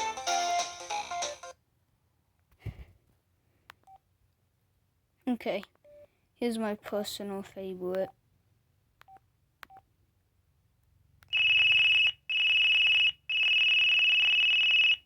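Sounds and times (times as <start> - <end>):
buzzy phone ringtone: 0.0 - 1.5, 11.3 - 15.0.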